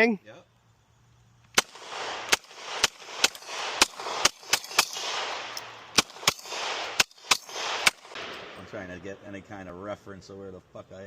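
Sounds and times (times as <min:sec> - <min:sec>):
gunshots with long echo: 0:01.6 - 0:09.4.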